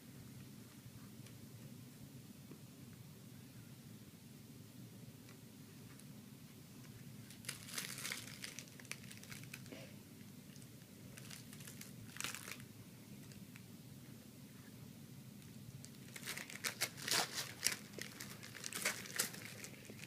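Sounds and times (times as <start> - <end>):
faint low hum: 0.0 - 20.0
crinkling: 6.8 - 13.6, 15.4 - 20.0.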